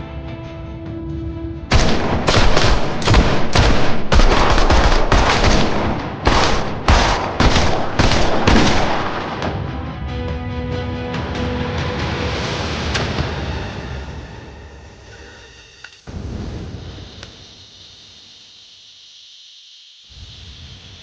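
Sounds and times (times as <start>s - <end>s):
heavy gunfire: 1.7s - 9.7s
dramatic music: 1.7s - 15.1s.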